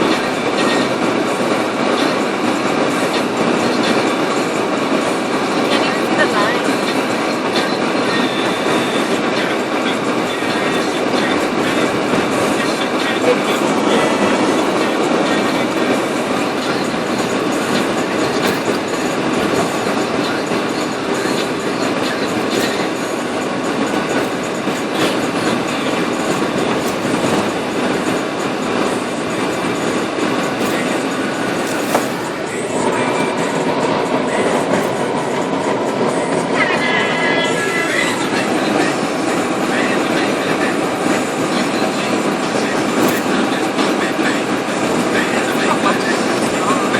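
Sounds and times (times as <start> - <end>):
tyres and body rattling: 0.0 - 35.4, 38.2 - 46.9
road noise inside car: 0.0 - 46.9.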